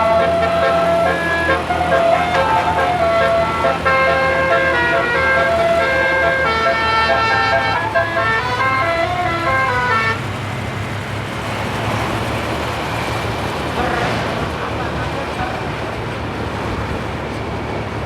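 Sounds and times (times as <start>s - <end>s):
musical air horn melody: 0.0s - 10.2s.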